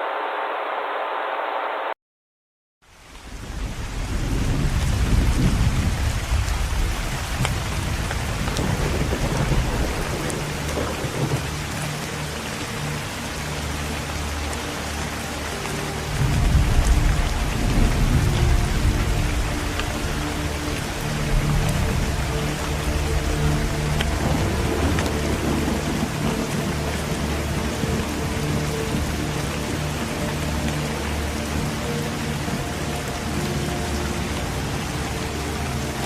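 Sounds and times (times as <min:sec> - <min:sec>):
heavy rain: 0:02.8 - 0:36.0
deep rolling thunder: 0:03.3 - 0:11.8, 0:16.1 - 0:29.5
low sustained music notes: 0:03.6 - 0:36.0.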